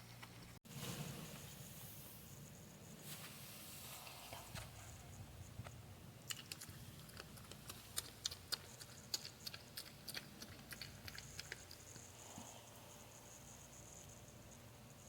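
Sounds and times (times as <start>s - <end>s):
porcupine chewing peanuts: 6.2s - 12.3s.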